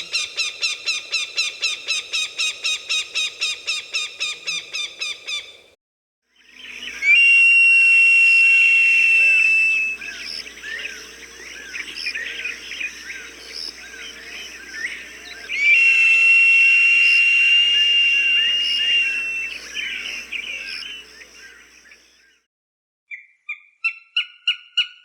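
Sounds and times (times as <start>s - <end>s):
small birds chirping: 9.9s - 16.0s, 17.0s - 22.2s
hawk screaming: 15.5s - 20.3s.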